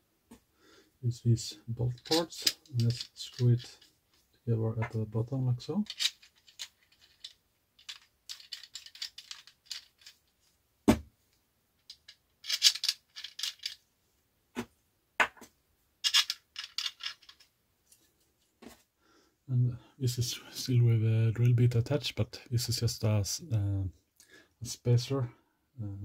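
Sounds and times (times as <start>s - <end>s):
plastic parts clicking and rattling: 1.9s - 3.9s, 5.8s - 10.4s, 11.8s - 13.8s, 16.0s - 18.0s.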